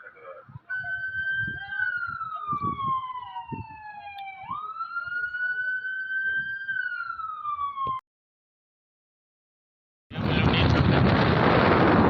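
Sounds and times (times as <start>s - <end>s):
siren wailing: 0.7s - 8.0s.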